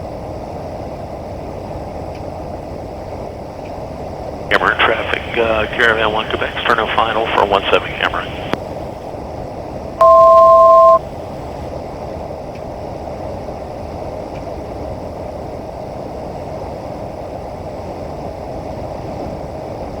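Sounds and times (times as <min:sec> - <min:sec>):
two-note electronic tone: 0:10.0 - 0:11.0.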